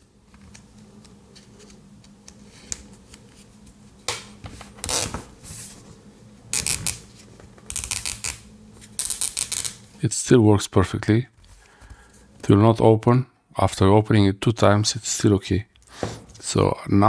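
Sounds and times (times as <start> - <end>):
zip tie ratcheting clicks: 9.0 - 9.8
handling scratches: 15.8 - 16.5.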